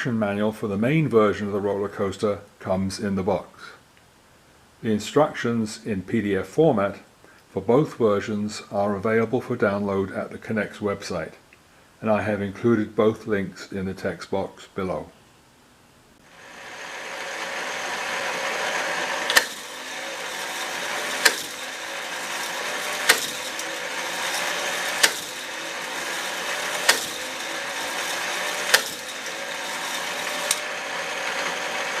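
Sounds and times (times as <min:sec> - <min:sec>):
plastic chain lift whirring: 0:16.8 - 0:32.0.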